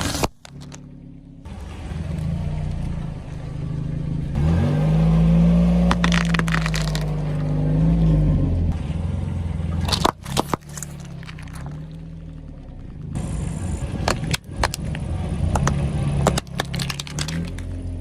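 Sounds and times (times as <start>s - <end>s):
car engine revving: 0.0s - 18.0s
sharp crunching cracks: 5.8s - 7.6s, 9.8s - 13.2s, 14.0s - 18.0s.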